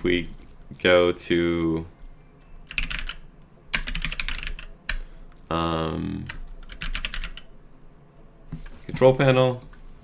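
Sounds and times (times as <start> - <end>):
keyboard typing: 2.6 - 5.0, 6.2 - 7.5.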